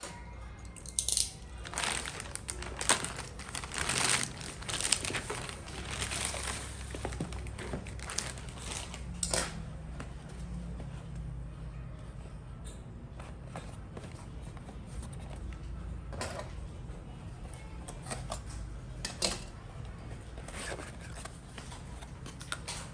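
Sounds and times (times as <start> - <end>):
packaging crinkling and rustling: 1.1 - 9.5.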